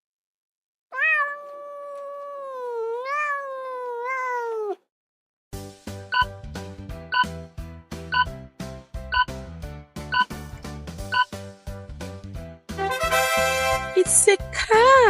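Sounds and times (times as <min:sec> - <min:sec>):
cat meowing: 0:00.9 - 0:04.9
bouncy music jingle: 0:12.8 - 0:14.3.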